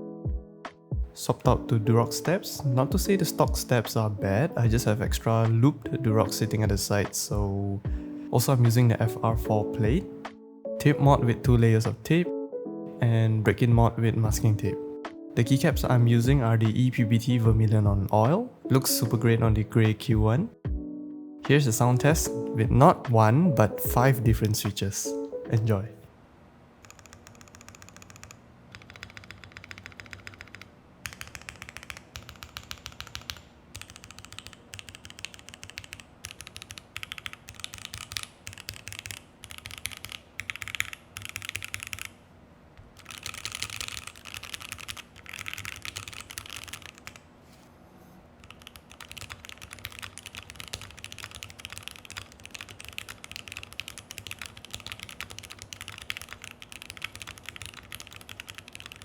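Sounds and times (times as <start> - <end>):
mechanical keyboard typing: 26.8 - 42.2, 42.8 - 47.3, 48.4 - 59.0.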